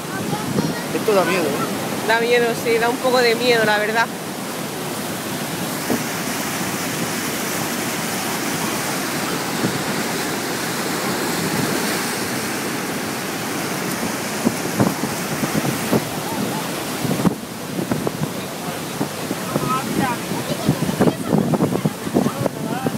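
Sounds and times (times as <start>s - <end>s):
floodwater roaring: 0.0s - 22.9s.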